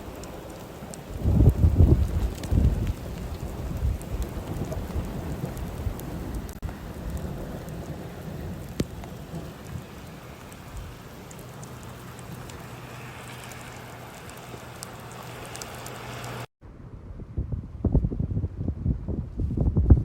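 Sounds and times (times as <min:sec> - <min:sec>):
heavy rain: 0:00.0 - 0:16.5
deep rumble: 0:01.1 - 0:13.0, 0:16.6 - 0:20.0.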